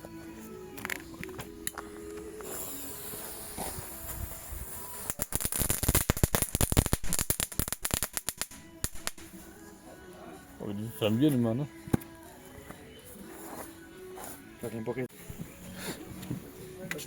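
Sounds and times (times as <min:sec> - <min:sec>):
fireworks cracking and popping: 0:00.8 - 0:09.6
firework hiss: 0:02.1 - 0:09.7.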